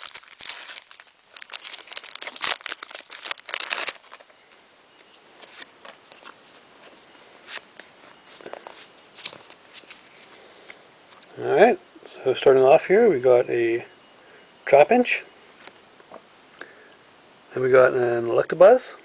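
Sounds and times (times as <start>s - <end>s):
foil wrapper crinkling: 0.0s - 6.6s
cards rustling and clicking: 0.0s - 11.3s.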